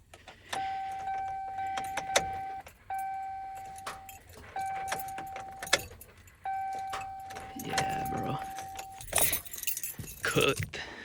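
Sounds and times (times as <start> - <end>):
warning chime dinging: 0.6 - 5.9, 6.5 - 9.4
keys jangling: 1.7 - 10.7.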